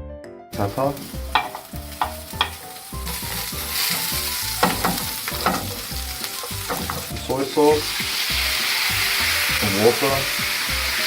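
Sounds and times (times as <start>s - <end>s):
food sizzling in frying pan: 0.6s - 11.0s
utensil scraping pan: 1.0s - 7.2s.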